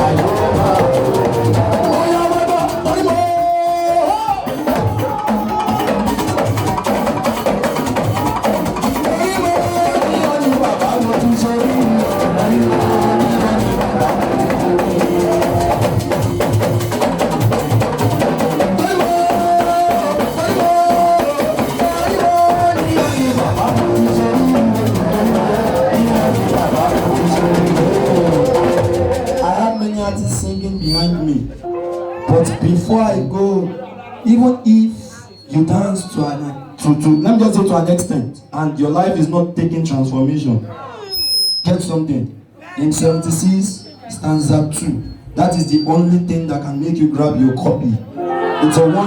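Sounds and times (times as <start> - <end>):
held pitched tones: 0.0 - 3.2, 11.0 - 17.8, 20.9 - 37.4, 43.1 - 49.0
drums and percussion beat: 0.0 - 33.4.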